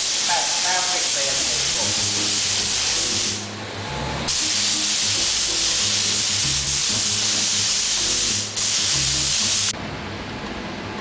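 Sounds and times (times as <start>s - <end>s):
spray gun hissing: 0.0s - 3.5s, 4.3s - 9.7s.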